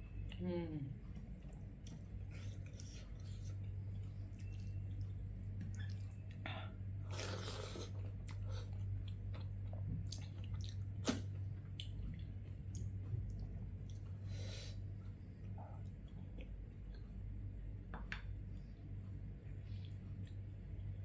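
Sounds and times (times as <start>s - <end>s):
steady low hum: 0.0s - 21.0s
chewing food: 1.0s - 21.0s.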